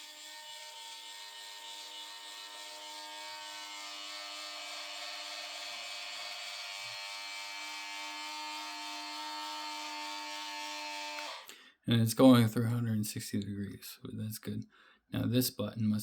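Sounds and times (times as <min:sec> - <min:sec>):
toy turret motor whirring: 0:00.0 - 0:11.5.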